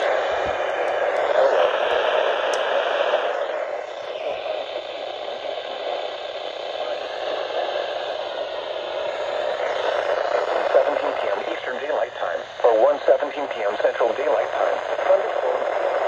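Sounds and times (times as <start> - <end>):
weather radio static hiss: 0.0 - 16.0.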